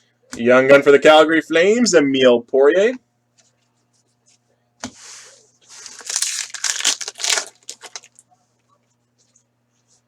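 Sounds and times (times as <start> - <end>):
wrapper crinkling: 5.8 - 8.2
wrapper tearing: 5.8 - 8.2.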